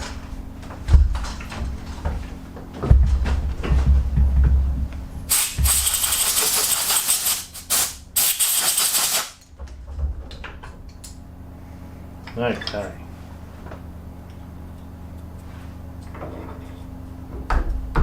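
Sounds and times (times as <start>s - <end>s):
compressed air blasting: 5.3s - 9.4s.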